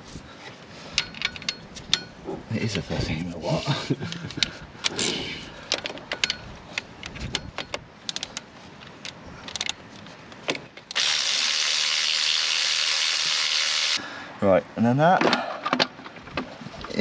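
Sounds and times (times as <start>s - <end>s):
ratchet spanner clicking: 7.3s - 8.4s.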